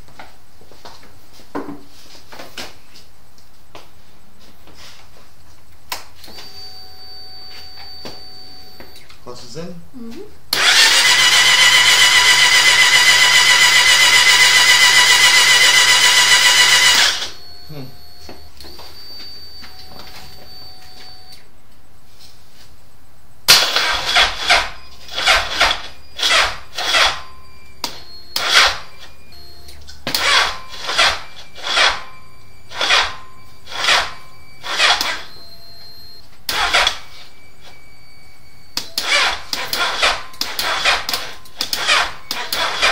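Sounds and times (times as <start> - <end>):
motorcycle engine cranking slowly: 10.6 - 17.3.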